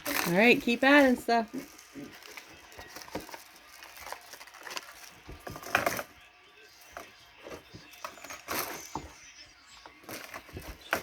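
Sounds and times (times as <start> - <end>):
small beads tapping and rustling: 0.0 - 6.1, 10.0 - 11.0.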